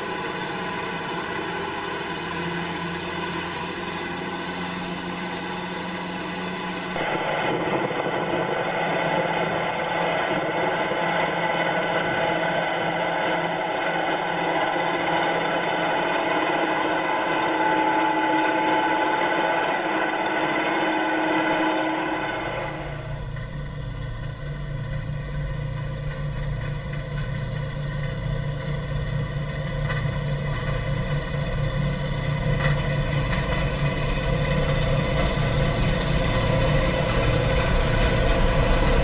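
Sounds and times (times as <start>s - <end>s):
farm machinery engines droning: 0.0s - 39.0s
loud dull engine: 0.0s - 39.0s.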